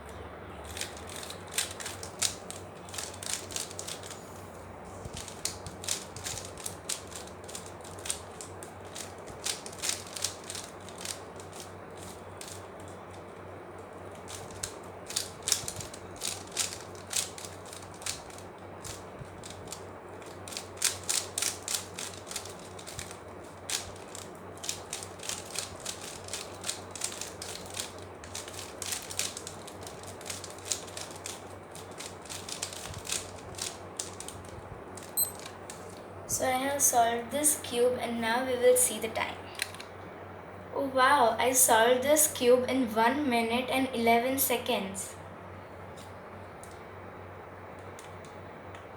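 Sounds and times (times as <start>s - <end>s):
puzzle cube clicking: 0.6s - 4.2s, 5.1s - 13.2s, 14.2s - 35.8s.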